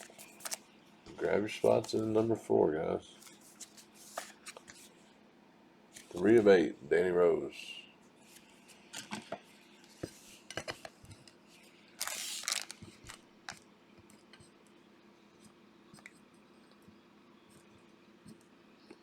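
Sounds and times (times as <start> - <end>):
card packs rustling: 0.0 - 0.6, 12.0 - 13.2.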